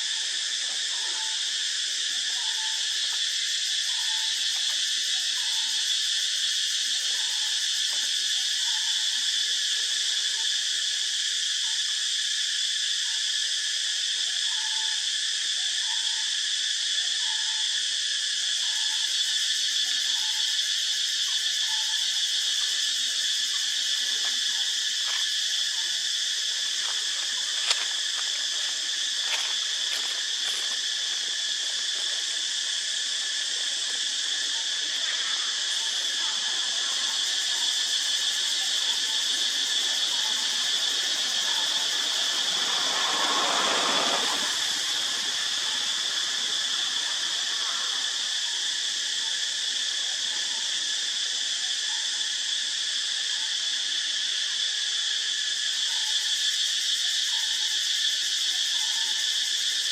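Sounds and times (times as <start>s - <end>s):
shrill insect chorus: 0.0s - 59.9s.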